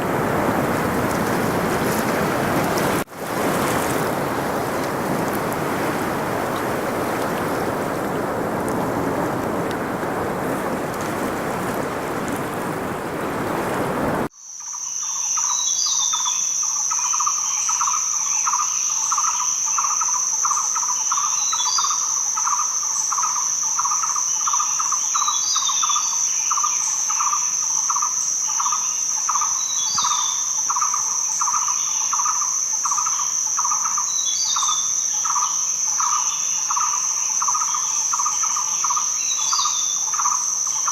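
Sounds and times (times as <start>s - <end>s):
ocean surf rushing: 0.0s - 14.3s
high-pitched insect trill: 14.3s - 40.9s
pulsed cricket-like chirping: 14.3s - 40.9s.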